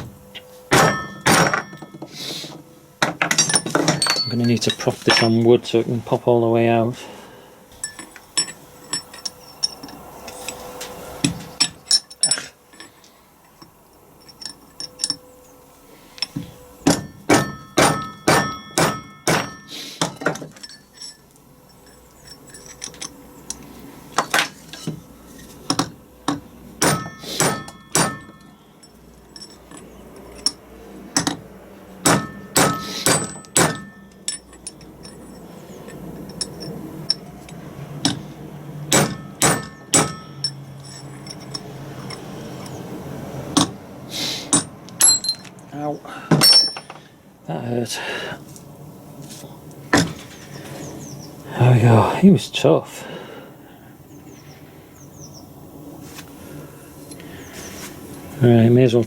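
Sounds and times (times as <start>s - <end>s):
hammer striking steel drift: 16.8s - 21.2s, 25.8s - 29.6s, 32.0s - 35.2s, 38.9s - 42.8s.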